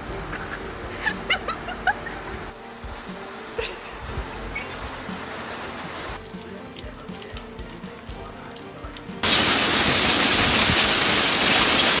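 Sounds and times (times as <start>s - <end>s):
heavy rain hissing: 0.0s - 12.0s
faint raindrop ticks: 6.1s - 12.0s.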